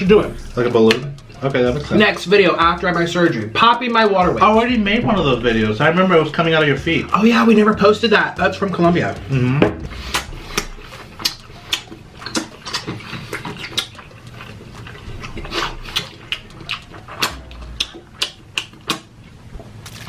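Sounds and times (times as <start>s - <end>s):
chewing and mouth smacking: 9.9s - 20.0s.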